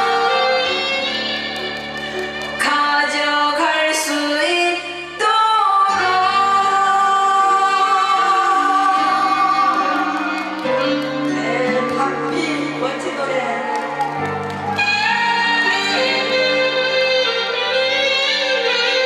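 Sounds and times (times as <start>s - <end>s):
backing music: 0.0s - 4.5s, 5.2s - 19.0s
woman singing: 2.6s - 13.9s.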